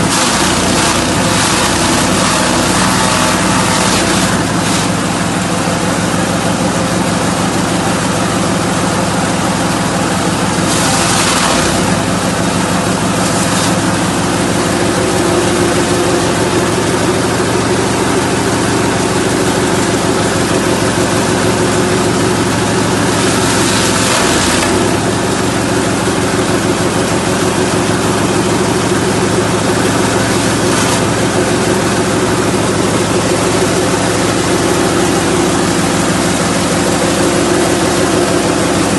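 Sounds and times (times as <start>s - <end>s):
forage chopper running: 0.0s - 38.9s.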